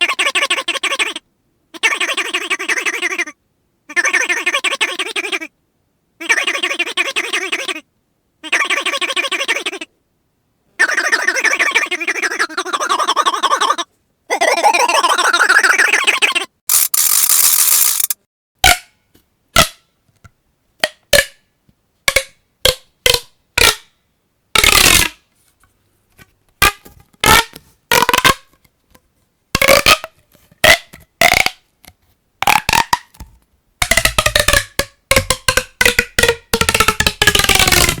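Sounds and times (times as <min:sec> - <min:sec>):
plastic pop tubes popping: 0:16.7 - 0:18.9, 0:19.6 - 0:21.4, 0:22.1 - 0:23.8, 0:26.6 - 0:28.6, 0:29.5 - 0:38.0.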